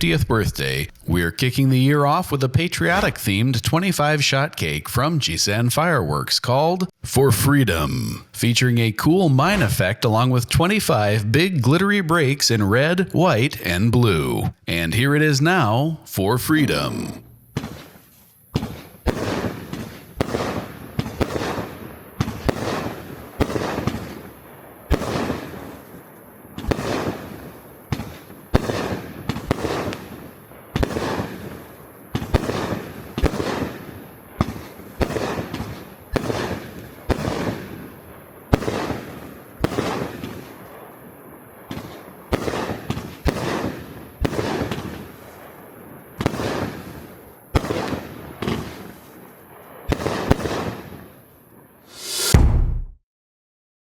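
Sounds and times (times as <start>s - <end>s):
fireworks cake firing bangs: 16.6s - 25.9s, 26.5s - 40.8s, 41.6s - 45.4s, 46.1s - 49.0s, 49.8s - 51.0s.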